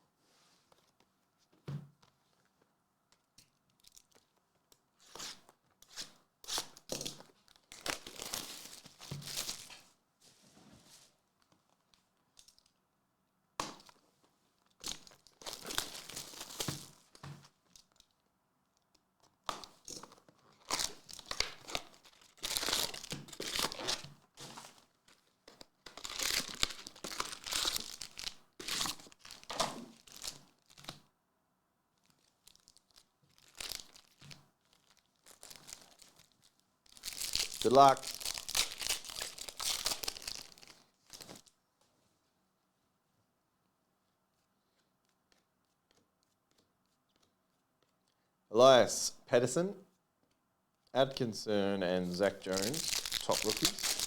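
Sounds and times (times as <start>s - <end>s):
plastic wrapping tearing and crinkling: 7.5s - 9.8s, 14.8s - 18.1s, 19.8s - 24.8s, 25.8s - 31.0s, 32.0s - 41.5s, 52.4s - 54.0s.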